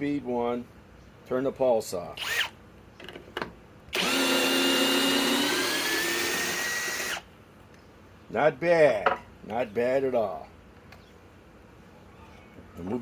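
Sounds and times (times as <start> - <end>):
drill motor whine: 4.0 - 7.2.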